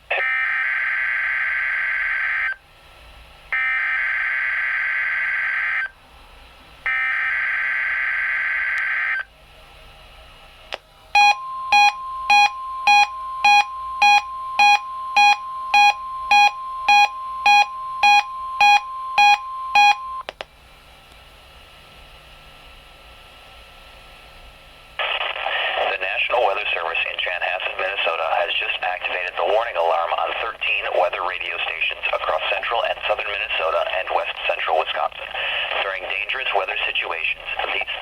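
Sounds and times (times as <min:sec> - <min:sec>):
steady warning alarm tone: 0:00.2 - 0:02.6, 0:03.5 - 0:05.9, 0:06.9 - 0:09.3, 0:11.1 - 0:20.2
alert receiver beeping: 0:11.2 - 0:20.2.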